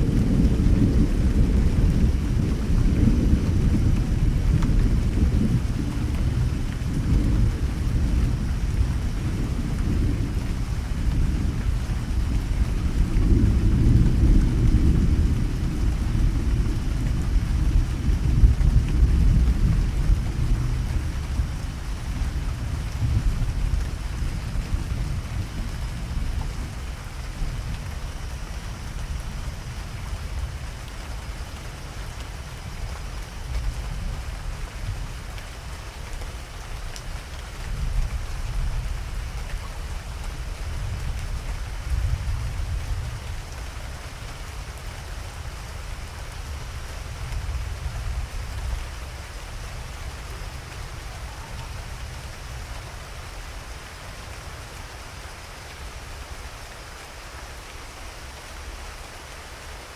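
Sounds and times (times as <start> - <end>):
thunder rumble: 0.0 - 30.9
rain falling: 0.0 - 59.9.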